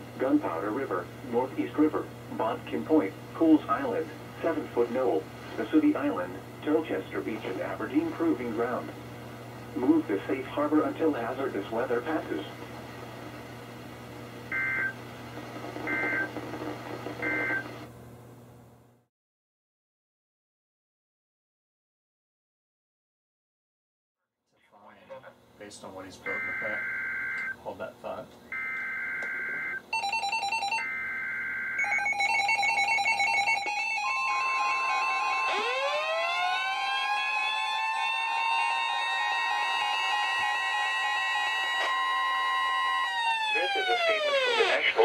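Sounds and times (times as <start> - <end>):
steady low hum: 0.0 - 19.1, 24.7 - 32.1
receivers beeping alarms: 14.5 - 15.0, 15.9 - 16.3, 17.2 - 17.7, 26.2 - 27.6, 28.5 - 45.0
steady warning alarm tone: 14.5 - 15.0, 15.6 - 17.9, 26.2 - 27.6, 28.5 - 45.0
buzzy two-tone data screech: 26.3 - 27.6, 39.2 - 45.0
rising siren-like sweep: 33.6 - 45.0.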